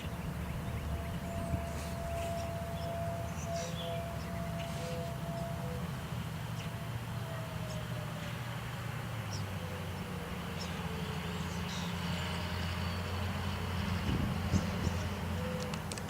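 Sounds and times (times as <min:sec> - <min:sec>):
steady low rumble: 0:00.0 - 0:07.3
warning siren winding down: 0:00.0 - 0:15.9.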